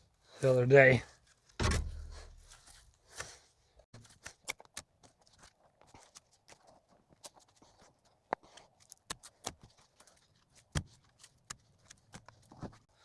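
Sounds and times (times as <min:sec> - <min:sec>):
shovel digging in dirt: 0:01.6 - 0:02.8.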